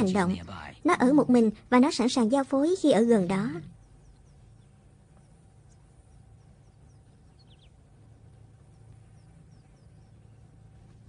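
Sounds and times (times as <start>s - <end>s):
low steady background hum: 0.0s - 11.0s
high bird chirps: 3.3s - 10.8s.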